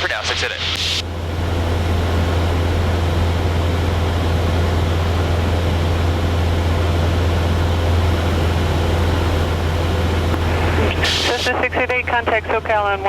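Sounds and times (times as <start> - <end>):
propeller plane engine droning: 0.0 - 13.0
rushing noise: 10.3 - 11.5.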